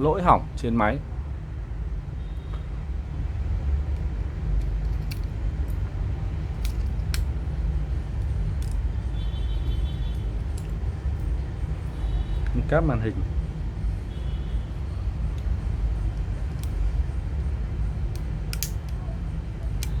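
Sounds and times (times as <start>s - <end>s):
steady low rumble: 0.0s - 20.0s
small tools clicking: 4.0s - 5.9s, 6.5s - 7.4s, 8.2s - 8.9s, 9.8s - 11.3s, 15.4s - 16.9s, 18.1s - 20.0s.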